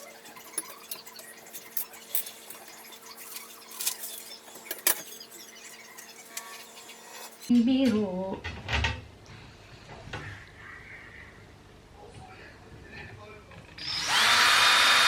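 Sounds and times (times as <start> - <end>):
objects being handled: 0.4 - 5.3.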